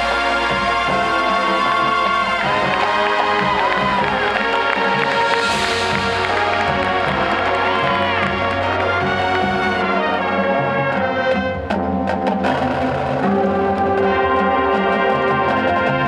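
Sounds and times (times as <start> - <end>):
sharp percussion hits: 0.0 - 10.0
marching band playing: 0.0 - 16.0.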